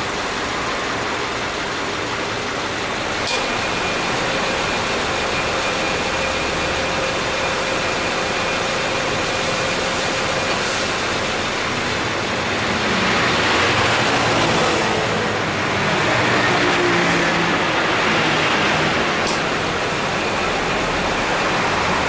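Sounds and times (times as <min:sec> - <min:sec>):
car engine idling: 0:00.0 - 0:14.1
rush of fan air: 0:00.0 - 0:22.0.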